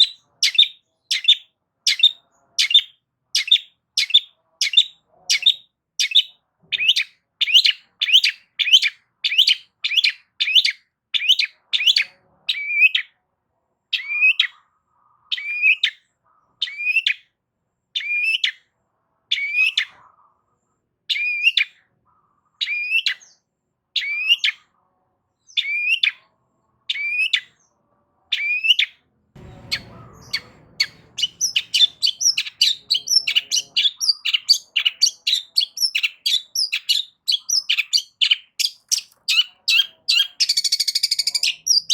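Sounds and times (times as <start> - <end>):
bird calling with downward notes: 0.0 - 13.1, 18.0 - 18.6, 21.1 - 21.8, 22.6 - 23.4, 24.0 - 24.6, 25.5 - 26.2, 28.3 - 41.9
low rumble: 29.4 - 33.1.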